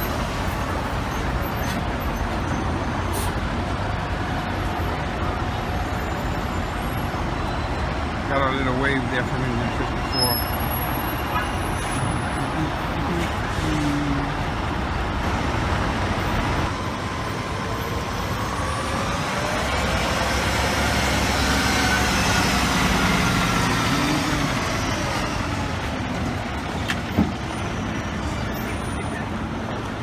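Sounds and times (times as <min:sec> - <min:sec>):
street traffic noise: 0:00.0 - 0:30.0
heavy truck engine passing: 0:09.9 - 0:30.0.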